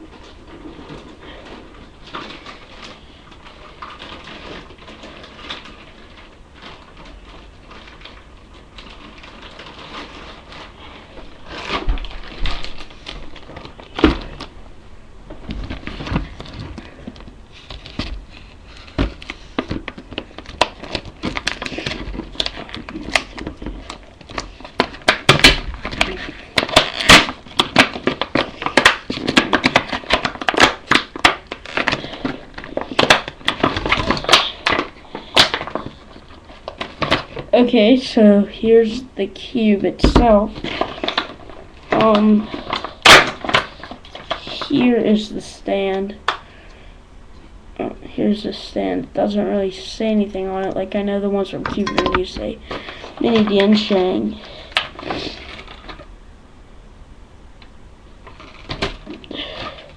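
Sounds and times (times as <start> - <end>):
plastic packaging crinkling: 0.0 - 14.6, 15.3 - 38.8, 39.7 - 46.4, 50.5 - 56.1, 58.2 - 59.9.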